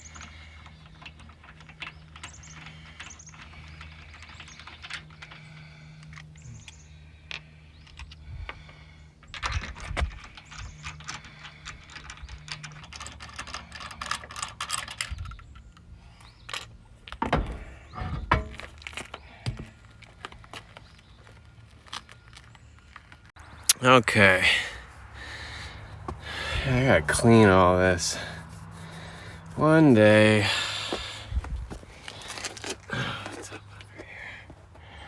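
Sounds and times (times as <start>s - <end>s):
tools and metal parts clinking: 0.0s - 8.2s, 9.2s - 20.2s
heavy knocks: 17.2s - 18.7s.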